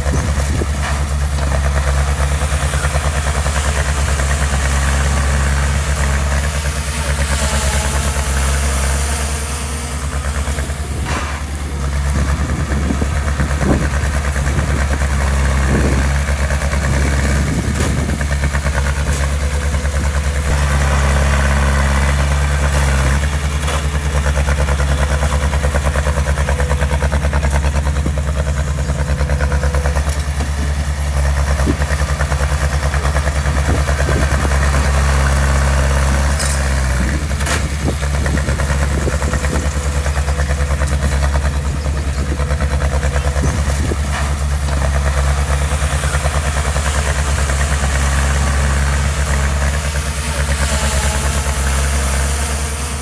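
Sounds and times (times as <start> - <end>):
heavy diesel engine running: 0.0 - 53.0.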